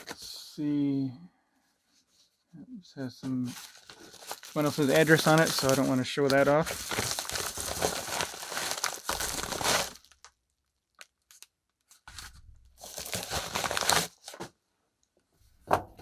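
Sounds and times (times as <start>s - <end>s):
packaging tearing and rustling: 3.5s - 10.3s, 11.0s - 14.5s
small clicks and crinkles: 9.9s - 12.2s.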